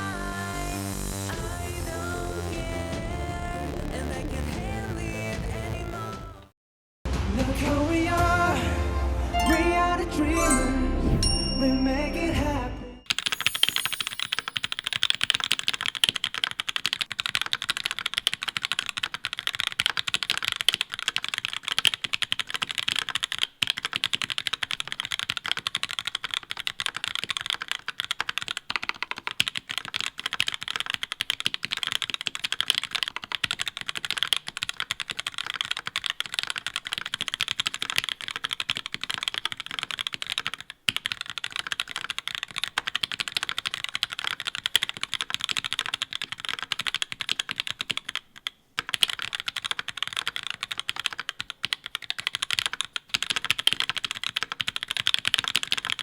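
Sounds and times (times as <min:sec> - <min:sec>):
typing on a mechanical keyboard: 0:13.1 - 0:56.0.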